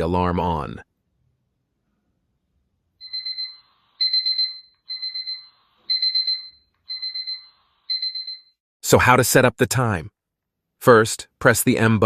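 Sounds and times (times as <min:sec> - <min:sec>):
rapid electronic alarm beeps: 0:03.0 - 0:08.5.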